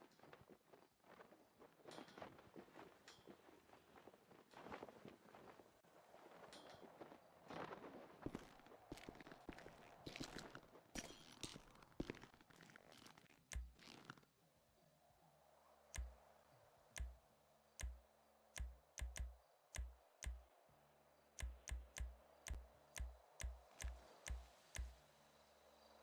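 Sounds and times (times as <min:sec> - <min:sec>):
faint sharp clicks with thumps: 0:13.5 - 0:14.3, 0:16.0 - 0:16.2, 0:17.0 - 0:17.2, 0:17.8 - 0:20.4, 0:21.4 - 0:25.0.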